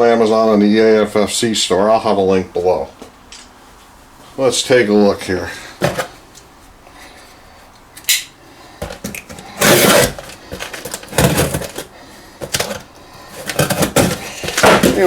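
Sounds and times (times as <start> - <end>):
box scraping and rustling: 5.7 - 6.2, 8.8 - 15.0.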